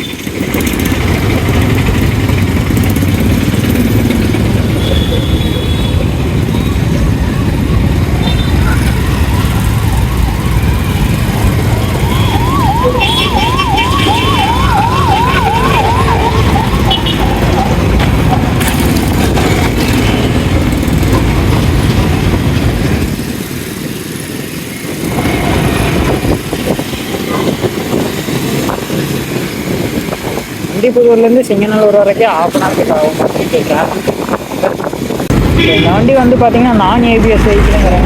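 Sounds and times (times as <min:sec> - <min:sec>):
motorcycle engine running: 0:00.0 - 0:12.8, 0:15.9 - 0:30.7
road and wind rumble: 0:00.0 - 0:38.0
siren yelping: 0:04.6 - 0:18.5.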